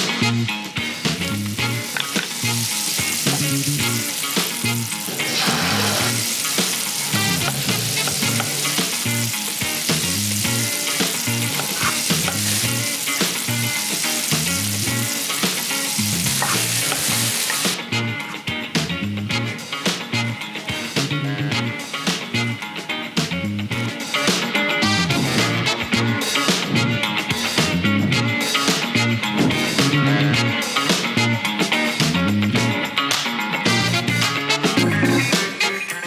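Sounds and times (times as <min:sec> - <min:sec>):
background music with bass line: 0:00.0 - 0:36.0
food sizzling in a pan: 0:01.2 - 0:17.8.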